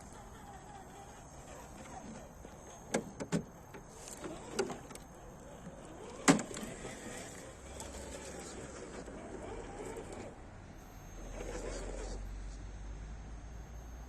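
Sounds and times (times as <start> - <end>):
rc crawler knocking and clacking: 0.0 - 10.4
faint steady background noise: 0.0 - 14.0.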